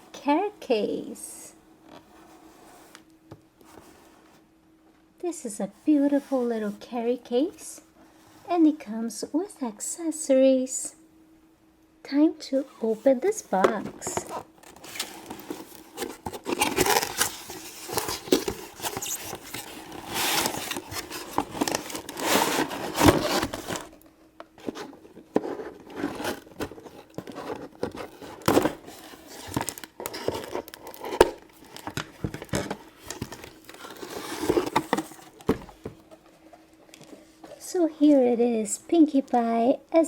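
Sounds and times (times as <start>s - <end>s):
cardboard and plastic crinkling: 12.8s - 37.6s.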